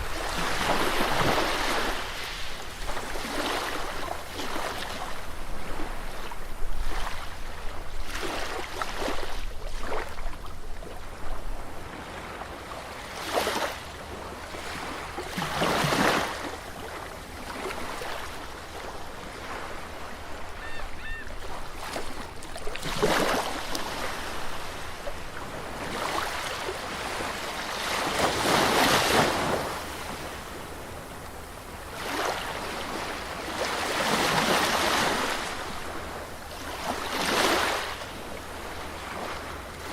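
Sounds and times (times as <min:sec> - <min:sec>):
sea waves breaking on beach: 0:00.0 - 0:39.9.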